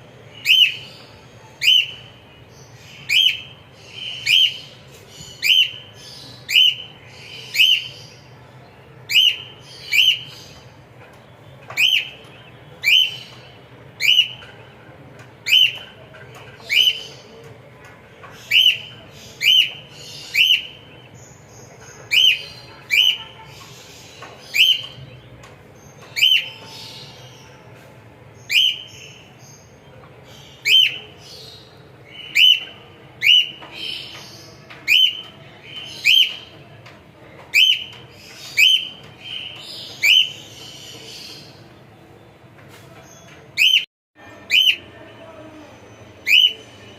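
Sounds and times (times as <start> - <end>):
cockatiel chirping: 0.4 - 1.0, 1.6 - 2.0, 3.0 - 3.5, 4.1 - 4.7, 5.4 - 6.9, 9.1 - 10.6, 11.8 - 12.2, 12.8 - 13.4, 14.0 - 14.4, 15.4 - 16.0, 18.4 - 20.8, 22.1 - 23.7, 24.5 - 25.0, 26.1 - 26.8, 28.5 - 29.1, 30.6 - 31.2, 32.2 - 36.5, 37.5 - 40.6, 44.5 - 44.8, 46.2 - 46.6.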